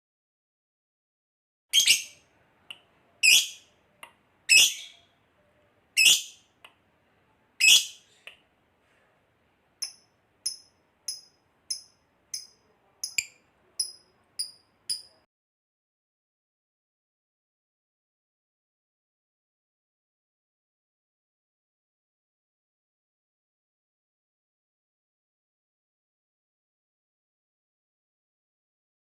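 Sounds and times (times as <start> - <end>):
shrill bird calls: 4.5 - 5.1.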